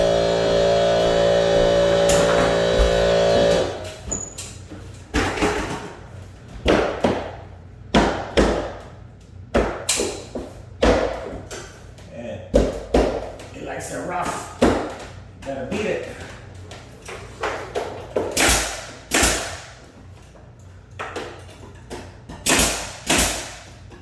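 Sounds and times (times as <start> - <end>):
nail gun firing: 0.0 - 3.9, 18.3 - 19.7, 22.4 - 23.7.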